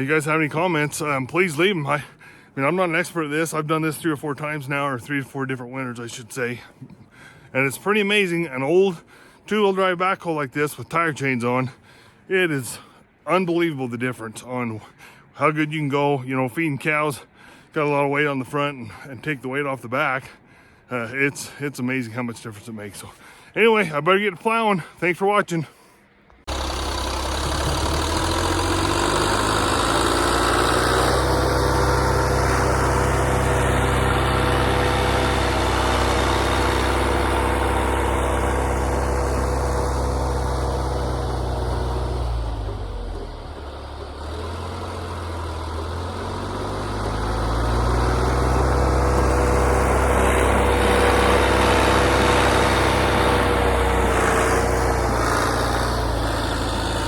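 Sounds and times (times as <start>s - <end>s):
backhoe engine running: 0.0s - 3.2s, 26.4s - 57.0s.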